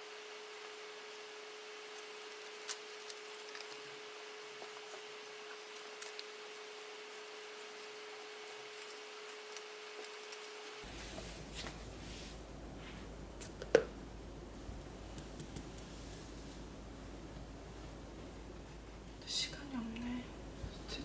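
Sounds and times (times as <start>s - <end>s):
low hum: 10.8s - 21.0s.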